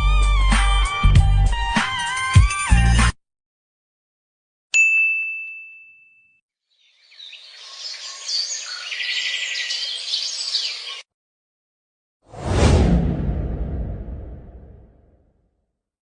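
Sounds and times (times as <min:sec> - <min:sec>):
bright bell ding: 0:04.8 - 0:06.4
birds chirping and singing: 0:06.8 - 0:11.0.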